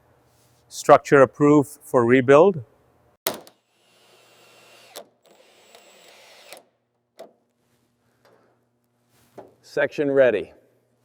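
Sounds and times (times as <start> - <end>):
small electric motor running: 3.8 - 6.6.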